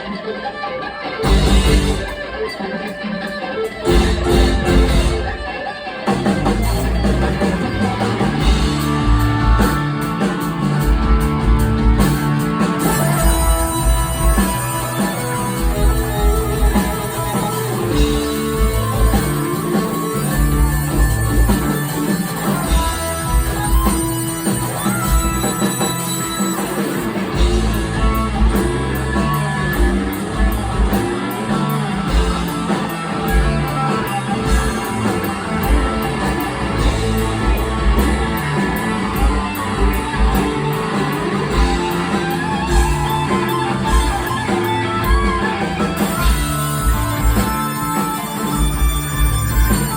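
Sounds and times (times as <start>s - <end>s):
drums: 0.0s - 49.9s
electric guitar: 0.0s - 49.9s
bass: 1.2s - 2.2s, 3.8s - 5.4s, 6.1s - 49.9s.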